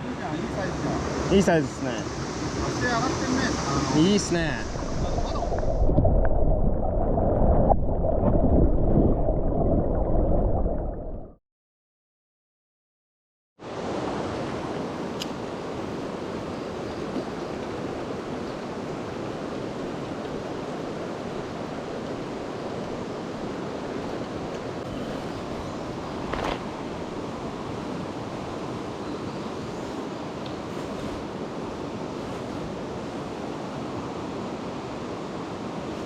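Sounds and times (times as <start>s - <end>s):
stream water rushing: 0.0s - 5.8s, 13.6s - 36.0s.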